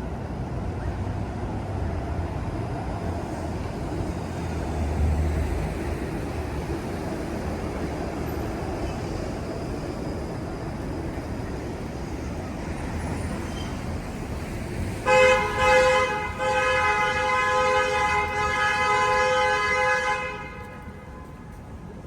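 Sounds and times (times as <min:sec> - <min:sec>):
street traffic noise: 0:00.0 - 0:22.0
vehicle horn honking: 0:15.1 - 0:21.3.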